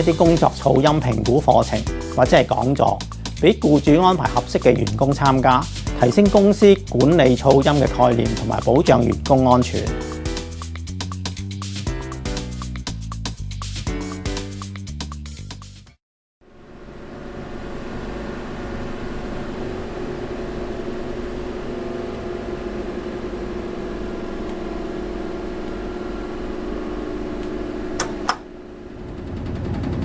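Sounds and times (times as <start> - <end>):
machinery humming: 17.1 - 30.0.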